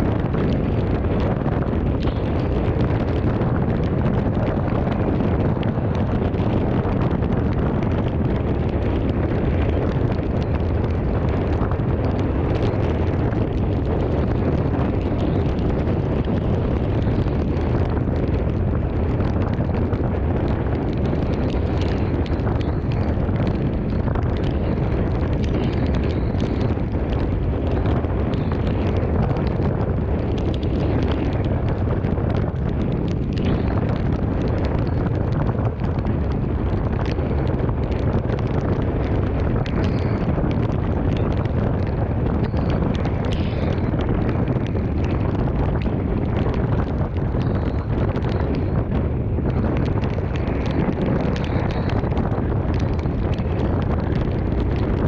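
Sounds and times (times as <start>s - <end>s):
strong wind on microphone: 0.0s - 55.0s
small ticks: 21.0s - 48.8s, 49.5s - 54.9s.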